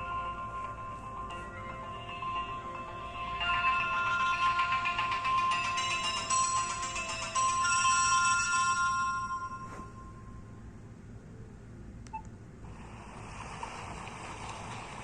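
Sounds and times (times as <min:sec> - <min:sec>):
electronic ringtone: 0:00.0 - 0:10.4.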